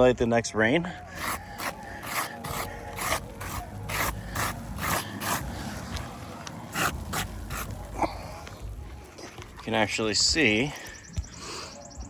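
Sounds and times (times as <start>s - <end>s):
wiping strokes scraping shingles: 1.1s - 9.9s.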